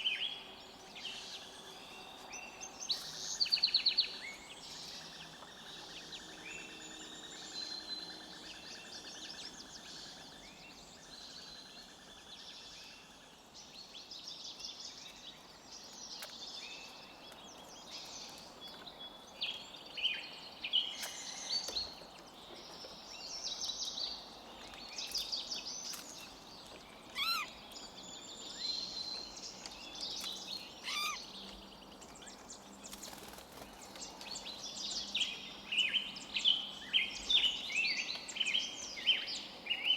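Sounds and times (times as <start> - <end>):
forest birds chirping: 0.0 - 39.9
sharp sweeping bird calls: 27.1 - 27.6, 30.2 - 31.4.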